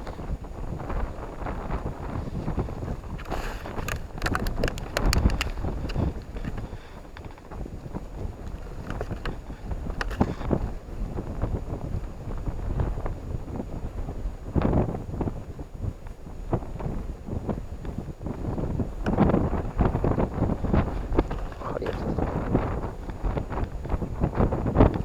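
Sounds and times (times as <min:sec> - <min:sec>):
wind buffeting microphone: 0:00.0 - 0:25.0
small clicks and knocks: 0:03.1 - 0:07.5, 0:08.4 - 0:10.6.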